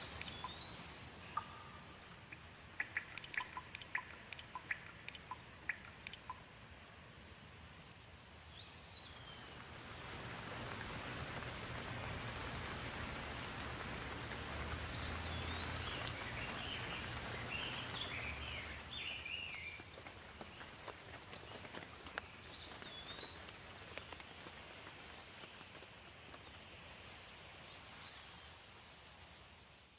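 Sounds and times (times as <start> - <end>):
bird chirping: 0.0 - 6.4, 14.8 - 20.0
steady rain: 0.0 - 29.9.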